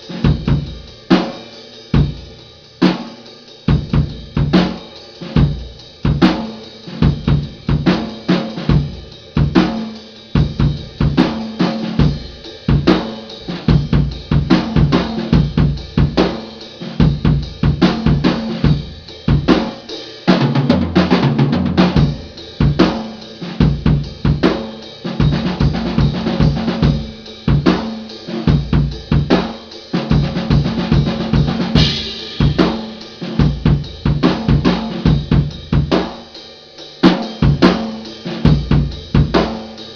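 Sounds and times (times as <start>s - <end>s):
drum kit playing: 0.0s - 39.9s
cymbal crash: 31.8s - 33.4s.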